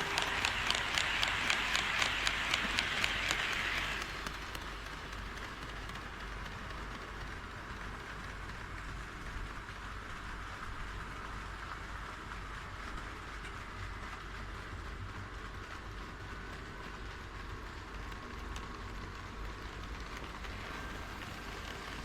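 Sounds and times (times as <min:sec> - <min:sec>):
locomotive motor: 0:00.0 - 0:08.6, 0:19.6 - 0:22.0
model train wheels rolling on rail: 0:00.0 - 0:22.0.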